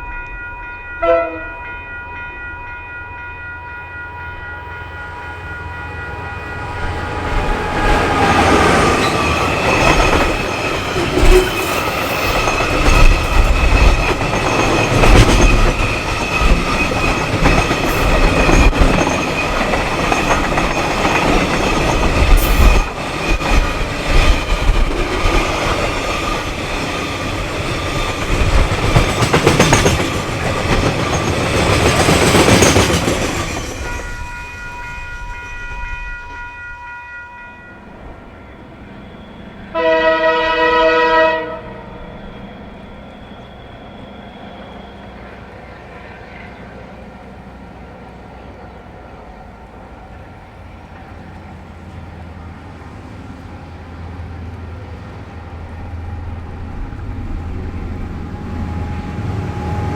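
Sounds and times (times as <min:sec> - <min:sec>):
freight train wagons rolling: 0:05.3 - 0:36.6
wheels clacking over rail joints: 0:06.6 - 0:34.1.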